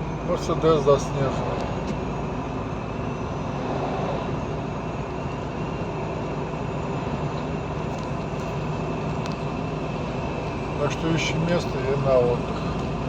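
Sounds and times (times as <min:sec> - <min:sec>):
truck engine and tyre noise: 0:00.0 - 0:13.0.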